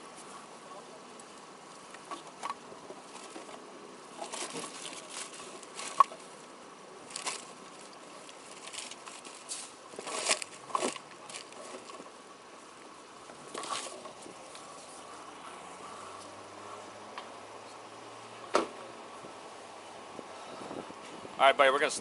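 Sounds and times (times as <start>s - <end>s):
objects rustling and clicking: 1.9s - 6.3s, 7.0s - 12.2s, 13.3s - 15.1s.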